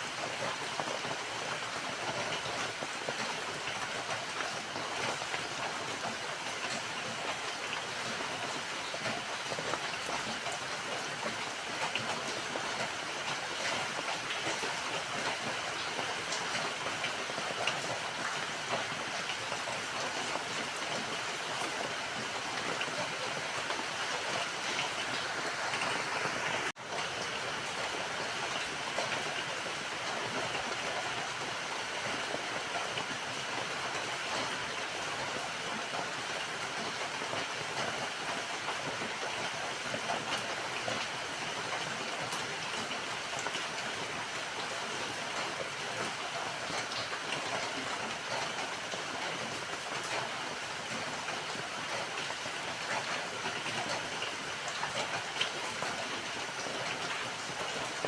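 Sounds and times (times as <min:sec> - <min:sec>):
rain pattering: 0:00.0 - 0:58.0.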